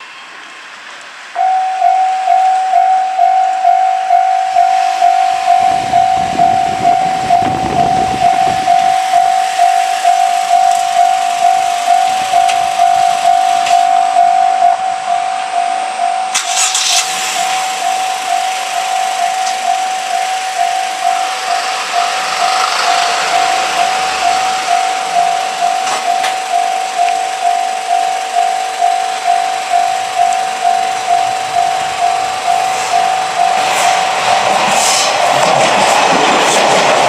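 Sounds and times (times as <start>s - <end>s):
level crossing warning bell dinging: 1.3s - 37.0s.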